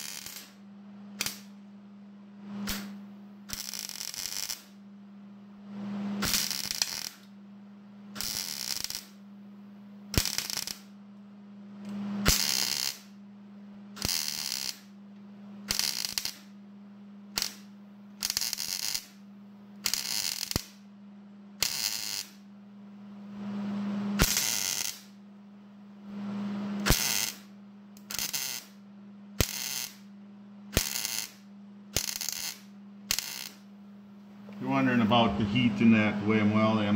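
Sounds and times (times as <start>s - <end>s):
arc welder crackling: 0.0s - 1.6s, 2.4s - 4.8s, 5.7s - 7.4s, 8.1s - 9.3s, 10.0s - 11.0s, 11.8s - 13.2s, 13.9s - 16.6s, 17.2s - 20.9s, 21.6s - 22.5s, 23.4s - 25.2s, 26.1s - 30.1s, 30.7s - 35.0s
steady low hum: 0.0s - 36.9s.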